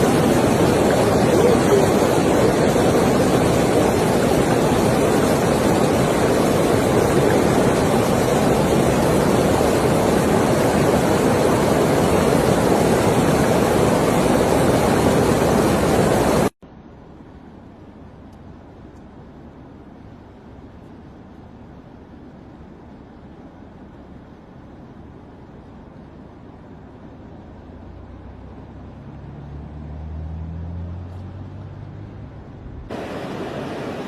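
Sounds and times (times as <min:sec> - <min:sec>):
water surging from ground: 0:00.0 - 0:16.6, 0:32.9 - 0:34.0
quiet water hiss: 0:00.0 - 0:29.9, 0:32.9 - 0:34.0.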